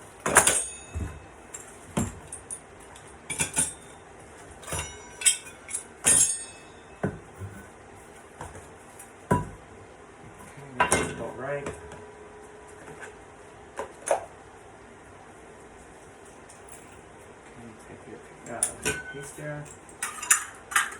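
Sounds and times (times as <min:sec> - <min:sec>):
metal parts clinking: 0:04.6 - 0:06.9, 0:18.5 - 0:20.9.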